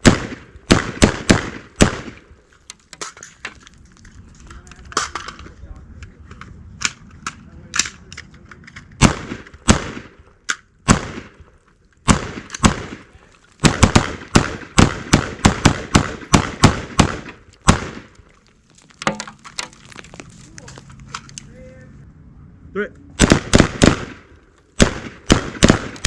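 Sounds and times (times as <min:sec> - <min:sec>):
rifle gunshots: 0:00.0 - 0:02.3, 0:09.0 - 0:18.2, 0:23.2 - 0:26.0.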